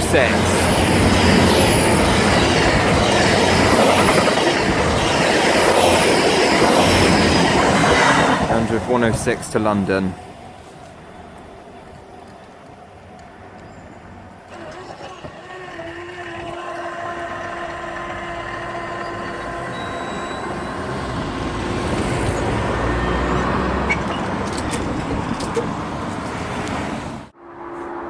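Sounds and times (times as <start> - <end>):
rush of train wheels and air: 0.0 - 14.8
train engine hum: 0.0 - 28.0
wheel clicks over rail joints: 14.5 - 26.8.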